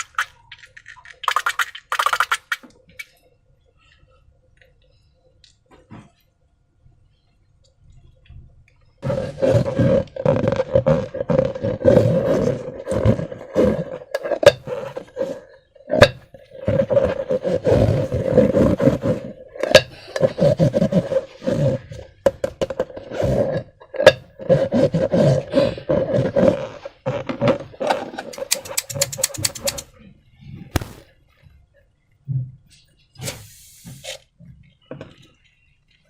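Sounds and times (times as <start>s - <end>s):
slime balloon squelching: 9.0s - 22.1s, 22.9s - 29.8s
sharp clicks: 28.4s - 29.8s.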